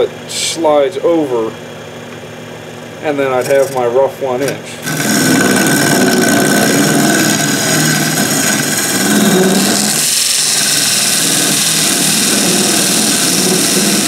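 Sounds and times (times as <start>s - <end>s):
parting tool cutting wood: 3.3s - 14.0s
wood lathe running: 3.3s - 14.0s.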